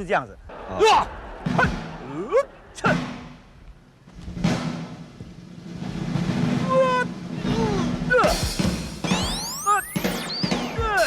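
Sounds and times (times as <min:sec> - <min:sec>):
low drum roll: 0:00.4 - 0:09.3
pitched electronic tones: 0:09.0 - 0:11.0.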